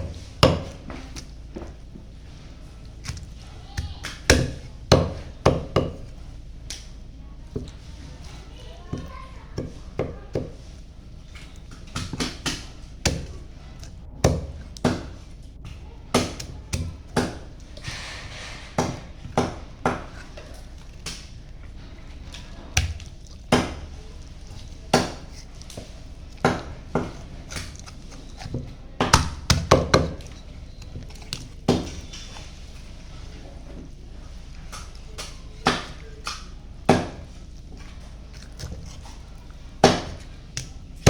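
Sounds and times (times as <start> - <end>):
knife chopping on cutting board: 0.0 - 1.8, 3.0 - 6.2, 7.6 - 10.7, 11.8 - 15.3, 16.1 - 21.3, 22.8 - 24.0, 24.8 - 30.4, 34.6 - 39.2, 39.8 - 40.7.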